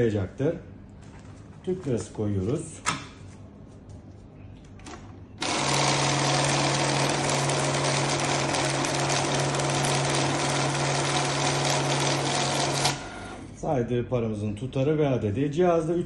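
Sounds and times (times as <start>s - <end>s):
banknote counting machine: 5.4s - 13.5s.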